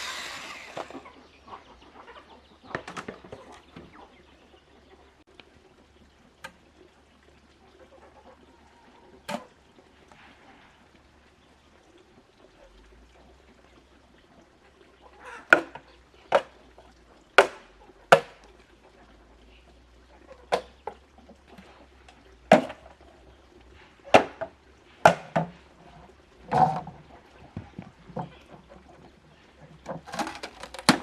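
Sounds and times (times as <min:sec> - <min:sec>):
hand tool blows: 0:00.0 - 0:01.0.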